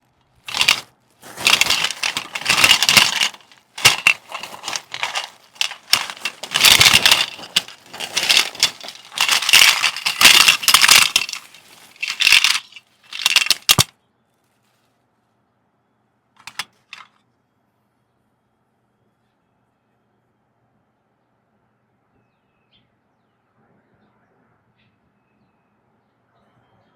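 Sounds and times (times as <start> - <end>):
rustling and crinkling: 0.3 - 15.0, 16.4 - 17.1
clicks and knocks of handling: 0.5 - 13.9, 16.4 - 17.2.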